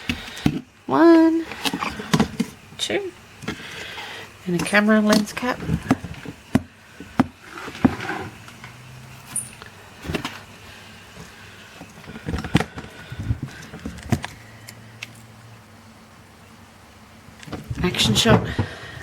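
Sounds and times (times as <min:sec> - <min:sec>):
plastic tubs clicking and tapping: 0:04.5 - 0:08.0
soft plastic scrapes: 0:07.4 - 0:08.6.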